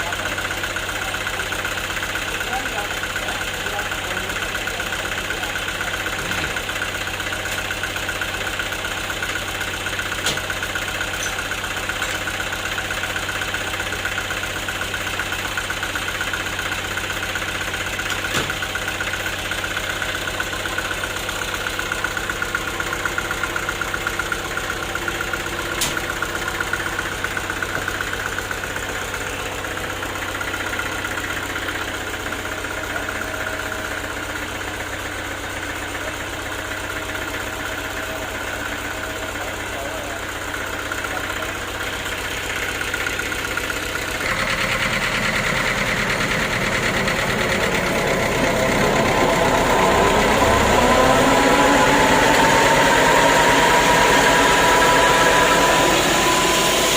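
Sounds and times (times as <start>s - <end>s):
sawmill machinery droning: 0.0s - 56.9s
high whine: 45.5s - 56.9s.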